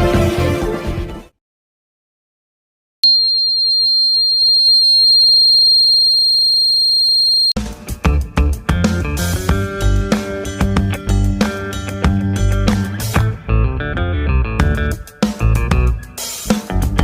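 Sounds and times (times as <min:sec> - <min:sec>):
background music: 0:00.0 - 0:01.4, 0:07.6 - 0:17.0
high-pitched alarm buzzer: 0:03.0 - 0:07.5.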